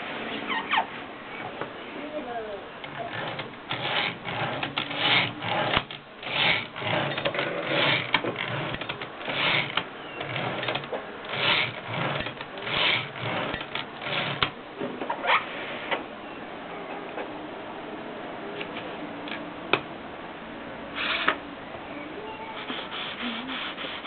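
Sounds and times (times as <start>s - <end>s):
typewriter clicks and rattles: 2.9s - 14.5s.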